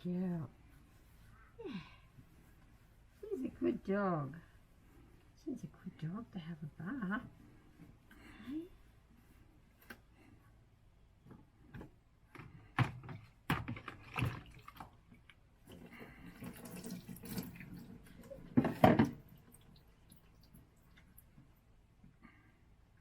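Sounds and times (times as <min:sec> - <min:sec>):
water splashing in a bucket: 0:13.5 - 0:21.2.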